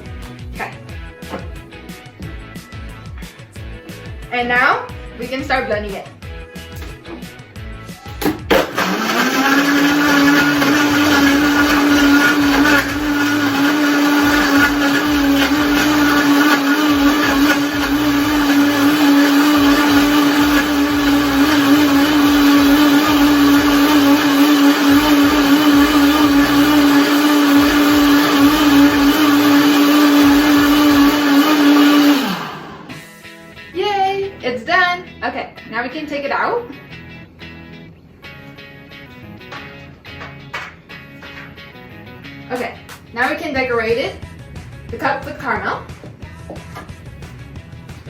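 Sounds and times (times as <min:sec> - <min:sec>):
blender running: 0:08.2 - 0:33.1.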